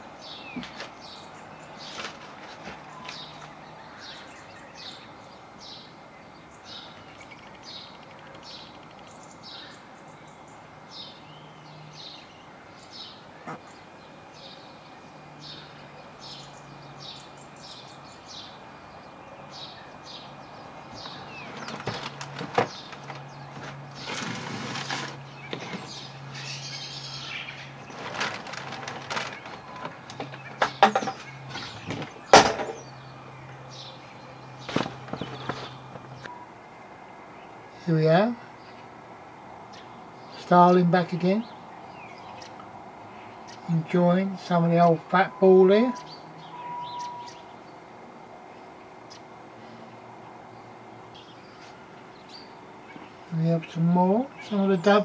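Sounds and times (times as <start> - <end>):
faint steady hum: 0.0 - 55.0
small bird chirping: 2.8 - 24.2, 25.2 - 28.3, 45.9 - 47.8
wings flapping and knocks: 21.0 - 26.0, 27.9 - 32.8, 34.7 - 36.2.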